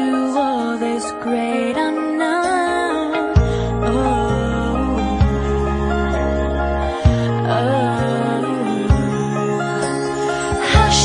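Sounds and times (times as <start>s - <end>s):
slow gentle song: 0.0s - 11.0s
deep bass note: 3.4s - 8.1s.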